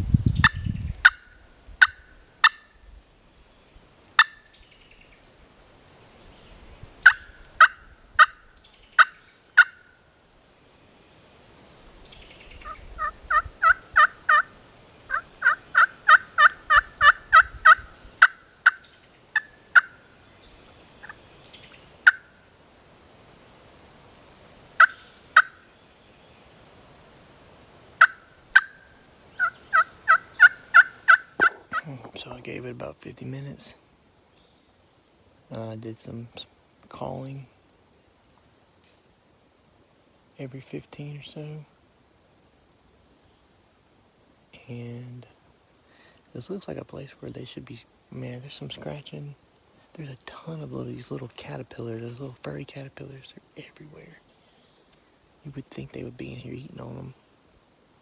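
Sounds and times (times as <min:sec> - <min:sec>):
turkey call clucks and yelps: 0:07.0 - 0:08.4, 0:09.0 - 0:09.9, 0:12.6 - 0:18.8, 0:19.4 - 0:20.0, 0:22.0 - 0:22.3, 0:24.8 - 0:25.6, 0:28.0 - 0:31.9.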